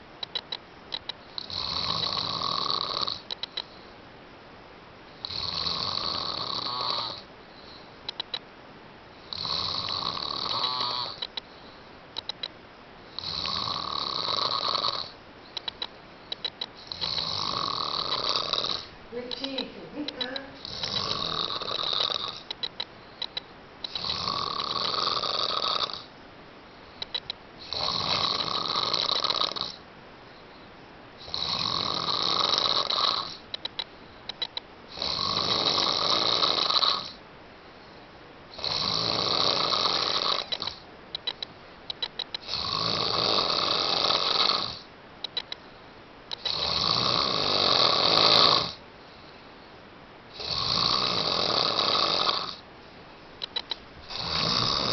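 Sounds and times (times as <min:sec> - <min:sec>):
loud high-pitched snoring: 0:01.4 - 0:03.3, 0:05.2 - 0:07.3, 0:09.3 - 0:11.2, 0:13.1 - 0:15.2, 0:16.8 - 0:18.9, 0:20.6 - 0:22.5, 0:23.9 - 0:26.1, 0:27.6 - 0:29.8, 0:31.2 - 0:33.4, 0:34.9 - 0:37.2, 0:38.6 - 0:40.8, 0:42.4 - 0:44.9, 0:46.4 - 0:48.8, 0:50.3 - 0:52.6, 0:54.1 - 0:54.9.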